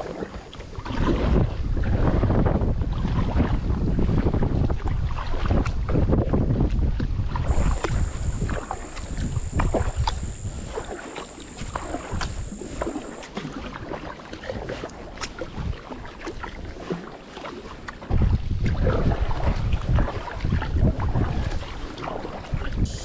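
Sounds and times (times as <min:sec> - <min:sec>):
wind buffeting microphone: 0:01.0 - 0:13.2
steady high whine: 0:07.5 - 0:13.3.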